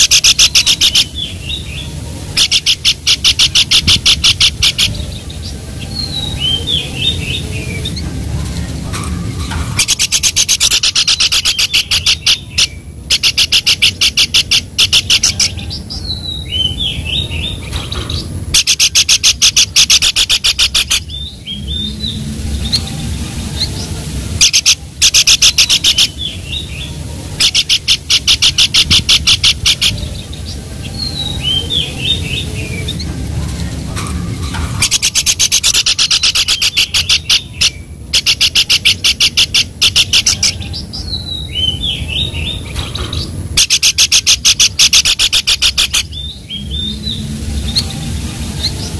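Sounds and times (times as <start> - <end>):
low background rumble: 0.0 - 48.9
songbird trilling: 34.8 - 47.9.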